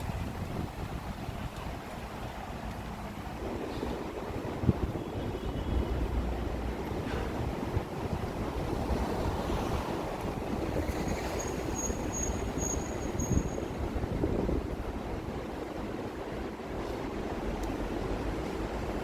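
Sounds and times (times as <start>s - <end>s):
traffic rumble: 0.0s - 19.0s
wind noise on microphone: 0.0s - 19.0s.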